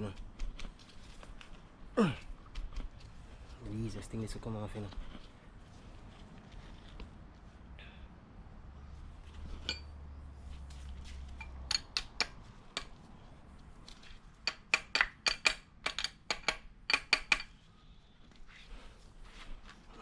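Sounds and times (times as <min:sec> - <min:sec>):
metal engine parts clinking: 0:09.5 - 0:10.0, 0:11.3 - 0:13.0.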